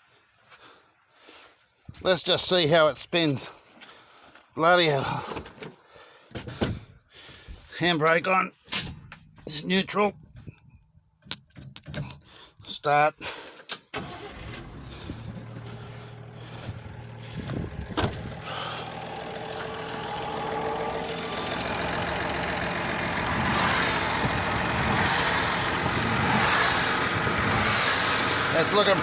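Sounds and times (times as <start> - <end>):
car engine starting and running: 13.7 - 29.0.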